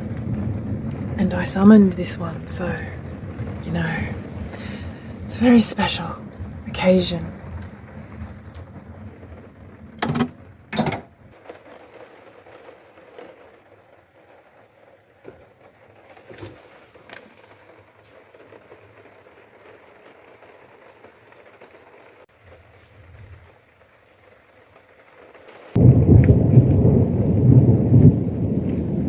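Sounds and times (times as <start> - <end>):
rain hissing: 0.0 - 29.0
faint clicks: 0.1 - 1.2.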